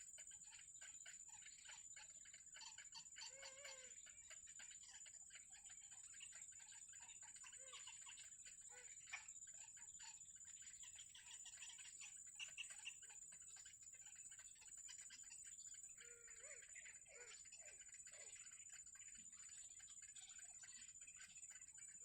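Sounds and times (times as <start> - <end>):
nestling birds cheeping: 0.0 - 22.0.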